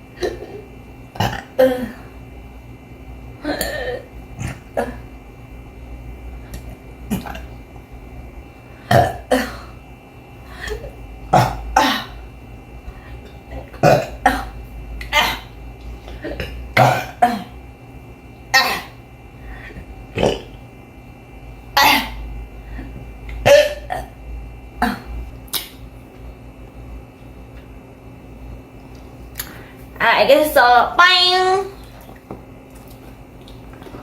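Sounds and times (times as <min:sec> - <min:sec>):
person burping: 0:00.2 - 0:02.1, 0:03.4 - 0:05.0, 0:07.1 - 0:07.5, 0:08.8 - 0:09.8, 0:10.6 - 0:12.2, 0:13.5 - 0:15.5, 0:16.1 - 0:17.6, 0:18.5 - 0:19.0, 0:20.1 - 0:20.6, 0:23.4 - 0:24.2, 0:24.8 - 0:25.2.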